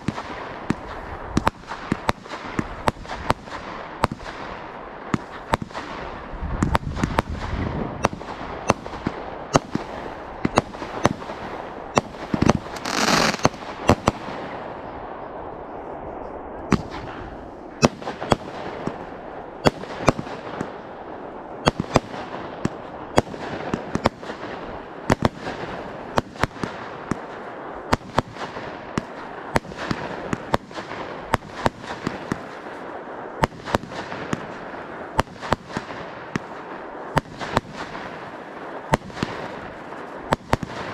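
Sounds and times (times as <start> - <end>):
fireworks crackle: 0.0 - 14.7, 15.8 - 40.9
fireworks bangs: 0.0 - 40.9
fireworks hissing burst: 12.7 - 13.6.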